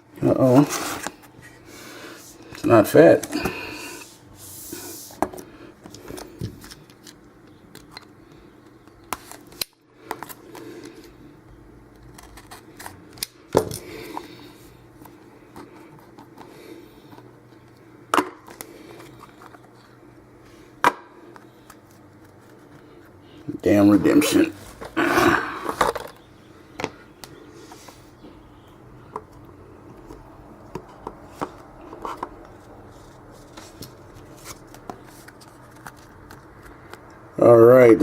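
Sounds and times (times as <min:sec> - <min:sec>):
low room hum: 0:00.0 - 0:38.0
cards rustling and sliding: 0:00.5 - 0:08.4, 0:21.2 - 0:26.2, 0:30.8 - 0:37.1.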